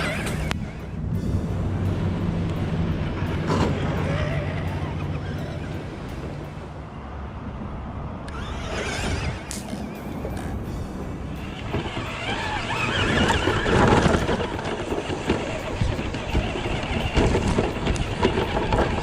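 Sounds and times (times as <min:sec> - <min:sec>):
electric toy truck driving: 0:00.0 - 0:06.7, 0:08.2 - 0:19.0
wind on microphone: 0:00.0 - 0:19.0
chassis rattling and knocking: 0:08.3 - 0:19.0.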